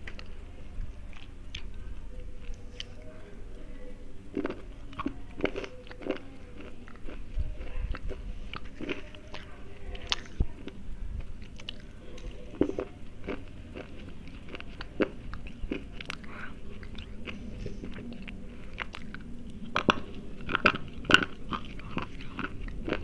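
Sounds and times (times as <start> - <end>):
slate pencils crunching and chewed: 4.3 - 23.0.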